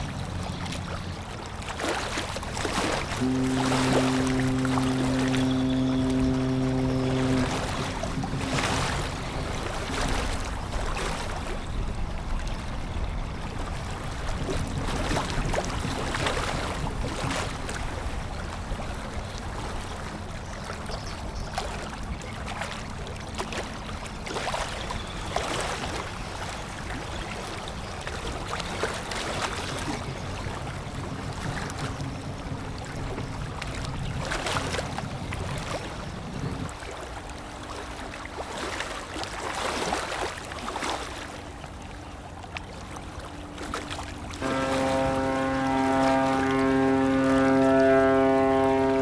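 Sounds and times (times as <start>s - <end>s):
low engine hum: 0.0s - 28.0s, 29.3s - 49.0s
rushing water and waves: 0.0s - 49.0s
loud steady multi-pitch tone: 3.1s - 10.4s, 44.4s - 49.0s.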